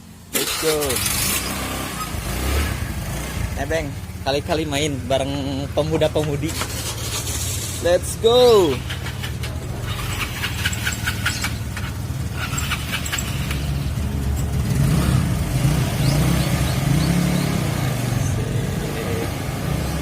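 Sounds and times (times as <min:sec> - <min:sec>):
motorcycle engine riding off: 0:00.3 - 0:20.0.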